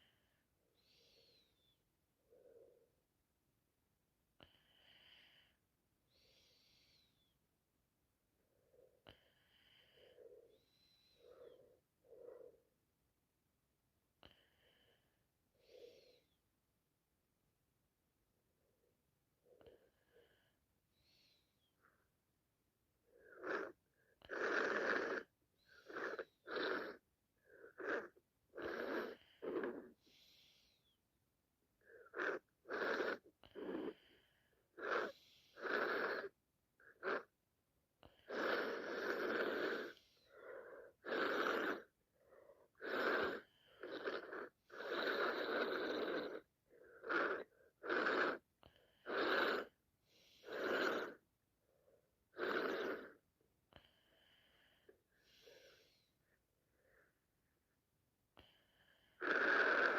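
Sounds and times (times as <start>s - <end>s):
person sniffing congested nose: 23.2s - 30.7s, 31.8s - 36.3s, 38.2s - 48.4s, 49.0s - 51.2s, 52.4s - 53.2s.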